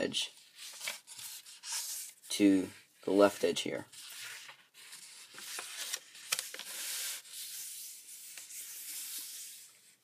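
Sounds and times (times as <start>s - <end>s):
paper rustling and sliding: 0.4s - 2.3s, 3.1s - 10.0s
paper crackles: 3.9s - 7.7s.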